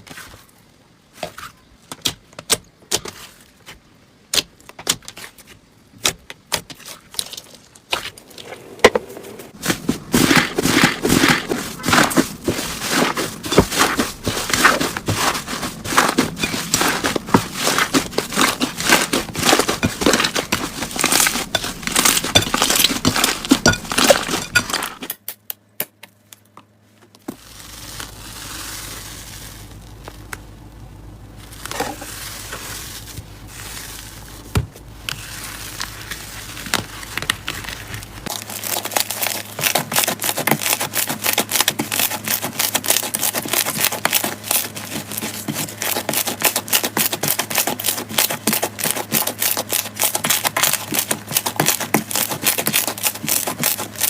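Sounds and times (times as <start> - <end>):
slime squeezed crackling: 27.4 - 54.0.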